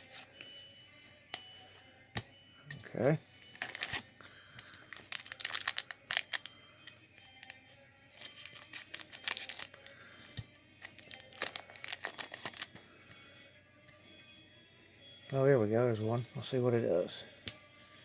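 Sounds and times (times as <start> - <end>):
card pack wrappers crinkling: 3.5 - 9.9, 10.8 - 12.7.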